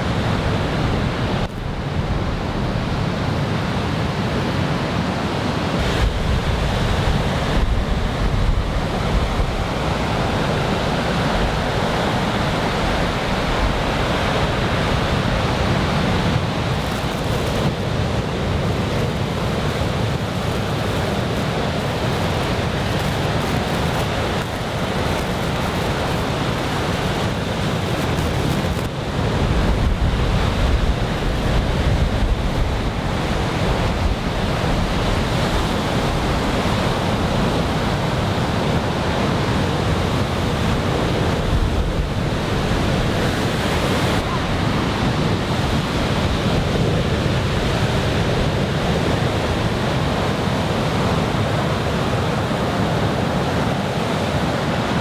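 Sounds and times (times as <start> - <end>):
waves breaking on beach: 0.0 - 55.0
wind buffeting microphone: 5.8 - 49.8.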